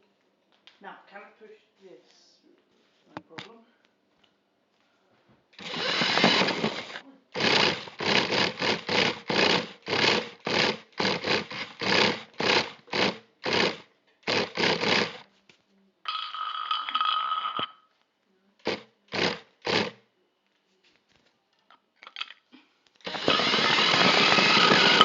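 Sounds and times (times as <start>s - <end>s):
toy car electric motor whirring: 5.6s - 15.2s, 18.7s - 20.0s, 23.0s - 25.0s.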